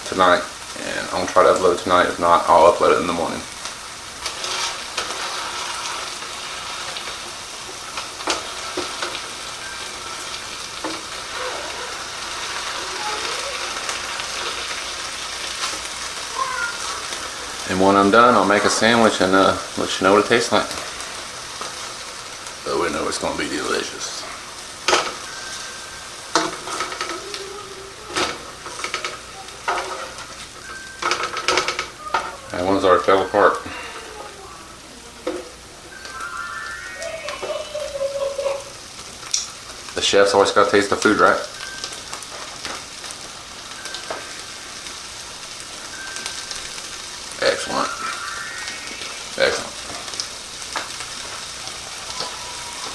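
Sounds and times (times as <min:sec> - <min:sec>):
fat popping and crackling: 0:00.0 - 0:36.3
meat sizzling in a frying pan: 0:00.0 - 0:52.9
utensil scraping a pan: 0:04.2 - 0:06.9.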